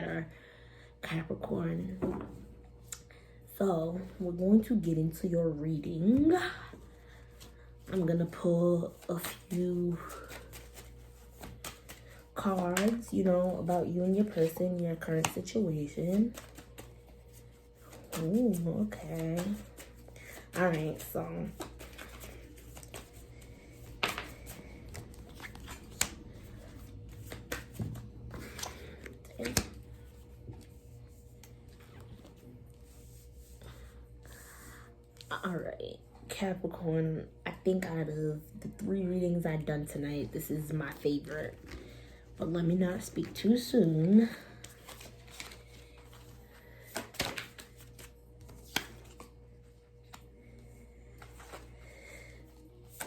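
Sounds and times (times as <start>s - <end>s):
faint steady hum: 0.0s - 53.0s
cards shuffling and rustling: 7.2s - 33.8s, 42.9s - 49.4s, 50.0s - 53.0s.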